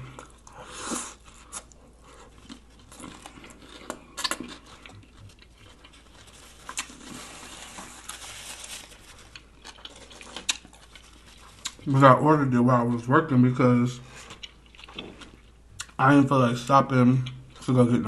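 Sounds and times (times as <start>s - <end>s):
chewing sandwich: 0.0s - 12.1s, 14.0s - 18.0s
soft crinkling: 0.0s - 12.1s.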